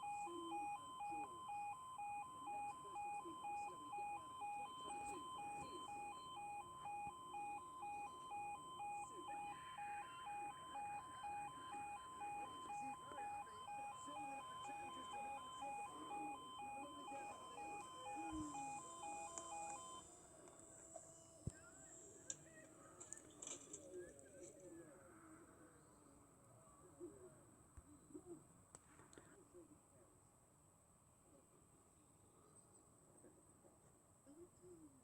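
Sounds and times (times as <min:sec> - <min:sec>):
level crossing alarm beeping: 0:00.0 - 0:20.0.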